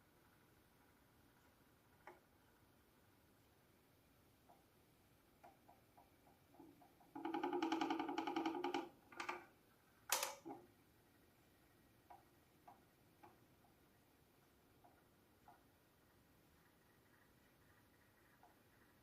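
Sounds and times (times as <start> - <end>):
heater faint ticking: 4.2 - 19.0
heater sharp click: 10.1 - 10.5.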